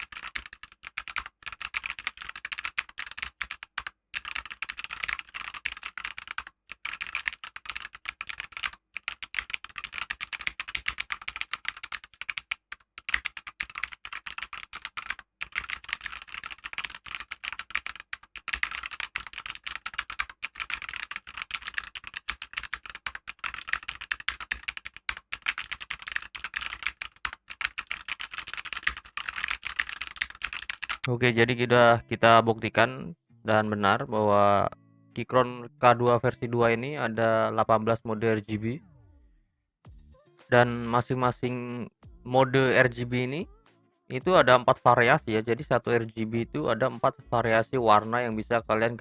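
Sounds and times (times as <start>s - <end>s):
mechanical keyboard typing: 0.0s - 31.1s.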